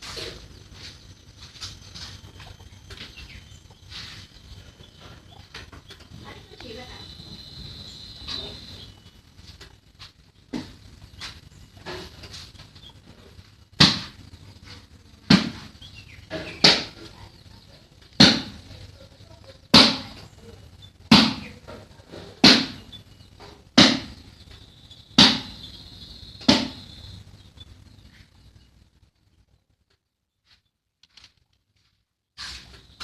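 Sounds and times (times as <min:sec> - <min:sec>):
sharp knocks: 0:13.8 - 0:14.2, 0:15.3 - 0:15.7, 0:18.2 - 0:18.7, 0:19.8 - 0:20.2, 0:21.1 - 0:21.8, 0:22.4 - 0:24.2, 0:25.2 - 0:25.6, 0:26.4 - 0:26.9.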